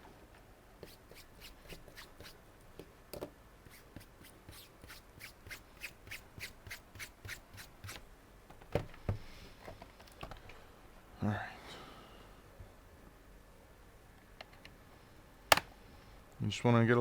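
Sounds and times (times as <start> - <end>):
rubbing on laptop case: 0.8 - 2.4, 3.7 - 8.0.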